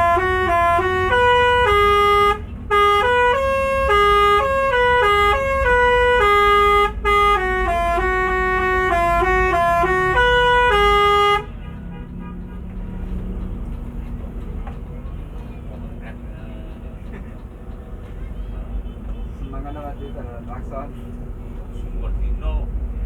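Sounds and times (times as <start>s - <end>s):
musical bus air horn: 0.0s - 13.2s
bus engine rumble: 0.0s - 23.0s.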